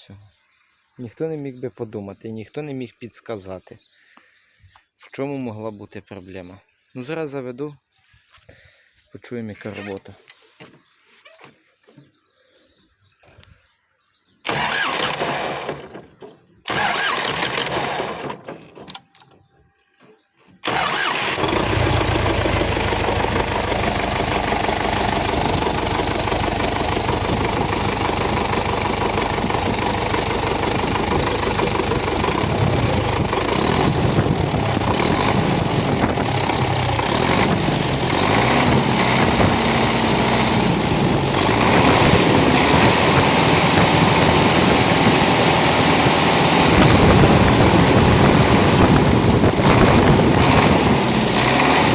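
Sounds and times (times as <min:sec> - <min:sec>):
diesel tractor engine running: 0:14.5 - 0:18.9, 0:20.6 - 0:51.9.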